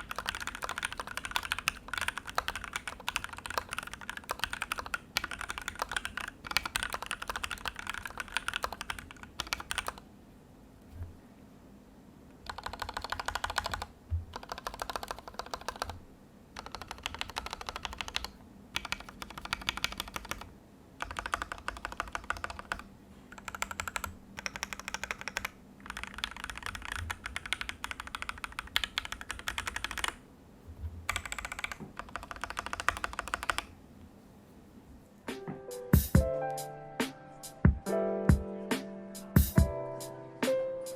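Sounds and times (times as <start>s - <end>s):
mechanical keyboard typing: 0.0s - 10.0s, 12.4s - 16.0s, 16.6s - 30.2s, 31.1s - 33.7s.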